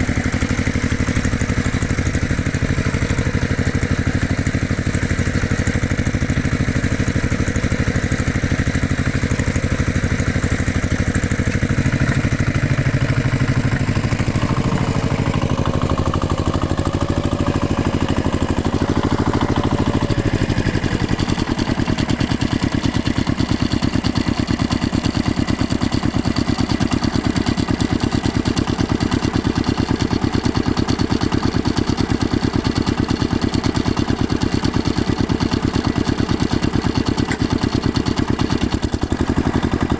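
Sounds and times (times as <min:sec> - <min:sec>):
heavy machinery engine running: 0:00.0 - 0:39.9.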